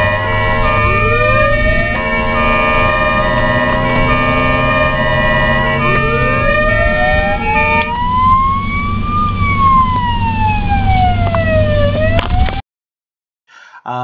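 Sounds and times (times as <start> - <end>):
steady chord of tones: 0.0 - 10.1
ambulance siren wailing: 0.0 - 12.6
low traffic rumble: 0.0 - 12.6.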